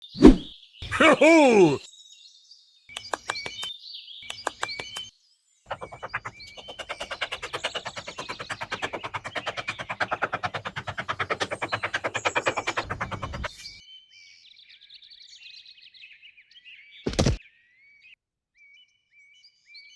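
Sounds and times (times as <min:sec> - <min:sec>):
rapid sharp clicks: 0:05.7 - 0:13.7.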